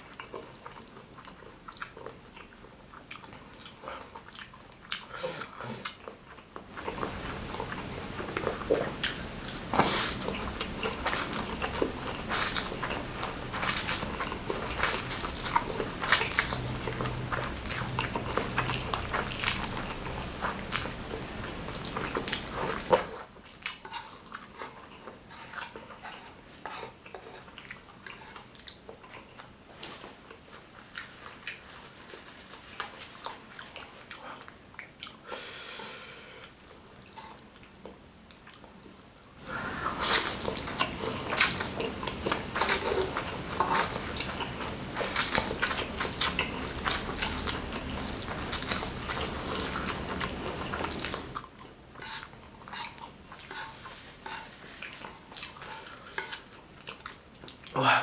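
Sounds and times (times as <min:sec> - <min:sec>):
person chewing with wet smacks: 0:00.0 - 0:35.3, 0:36.4 - 0:57.8.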